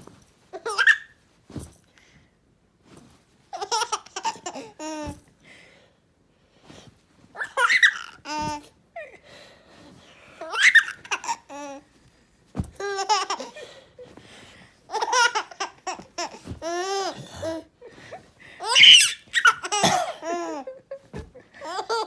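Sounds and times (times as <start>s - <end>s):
baby laughing: 0.6s - 1.1s, 3.6s - 5.2s, 7.4s - 8.7s, 10.4s - 11.8s, 12.8s - 13.6s, 14.9s - 17.7s, 18.6s - 22.0s.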